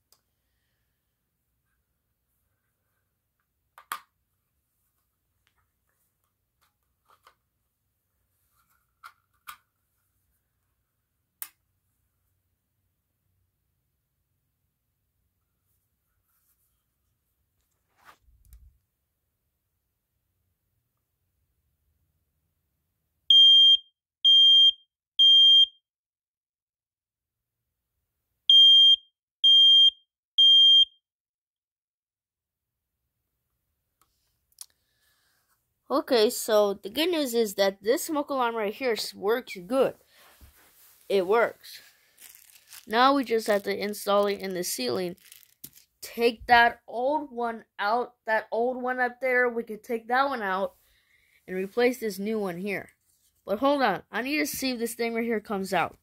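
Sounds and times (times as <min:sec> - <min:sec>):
smoke alarm beeping: 0:23.3 - 0:25.8, 0:28.5 - 0:31.0.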